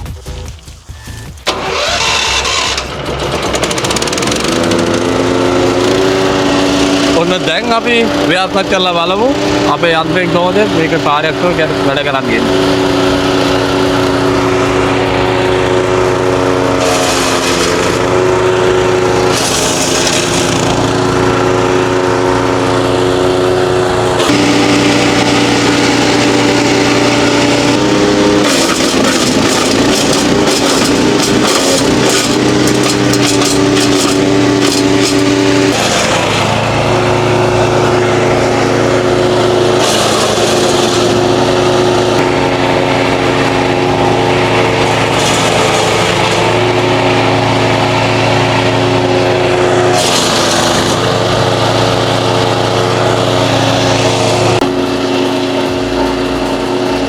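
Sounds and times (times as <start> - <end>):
rough rattling noise: 0.0 - 10.2, 24.2 - 55.8
wood chipper engine running: 0.0 - 57.0.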